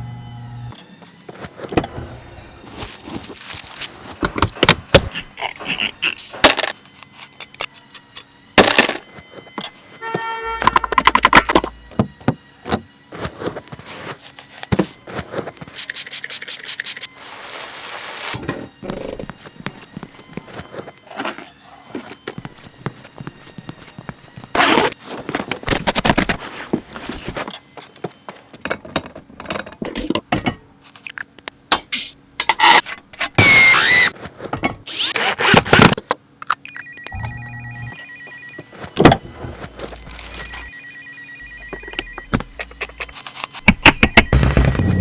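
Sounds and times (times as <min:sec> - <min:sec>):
metal tools clanking and scraping: 0:24.6 - 0:31.2, 0:41.8 - 0:43.7
pulsing electronic ringing tone: 0:36.7 - 0:38.8, 0:40.1 - 0:43.1.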